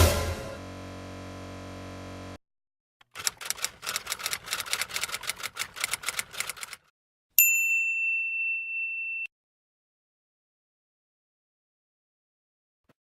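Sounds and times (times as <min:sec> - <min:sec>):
typewriter key clacks: 0:03.1 - 0:06.8.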